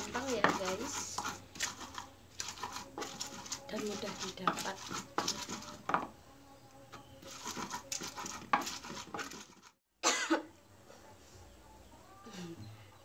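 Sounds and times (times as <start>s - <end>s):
woman coughing: 10.0s - 10.5s.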